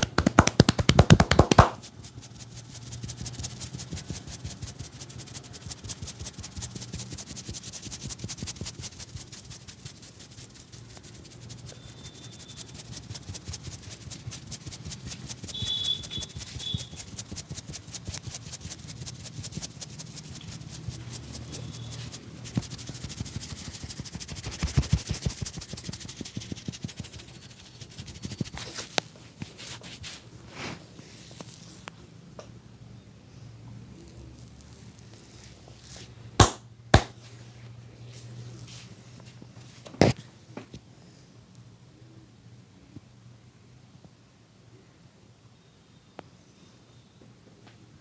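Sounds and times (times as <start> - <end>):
hands rubbing over a head: 0.0 - 32.0, 34.0 - 36.2, 37.0 - 40.2.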